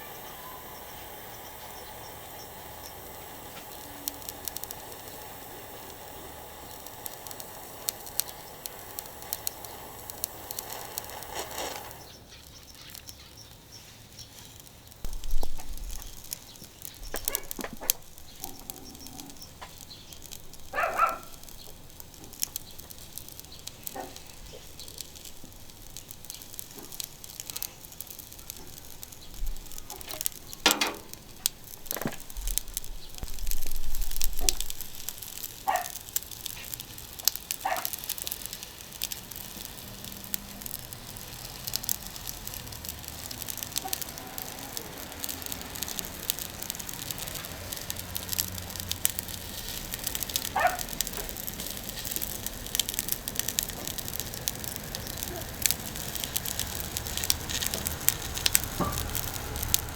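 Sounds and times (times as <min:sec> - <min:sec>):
charcoal crackling: 0:00.0 - 0:59.9
steady hiss: 0:00.0 - 0:59.9
sharp clicks: 0:00.1 - 0:13.6, 0:14.5 - 0:59.9.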